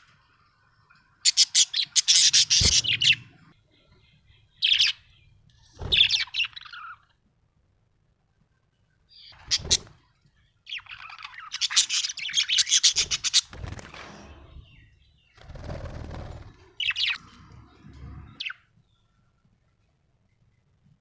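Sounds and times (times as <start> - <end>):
budgerigar chirping and chattering: 1.3 - 3.4, 4.5 - 5.2, 10.7 - 13.5.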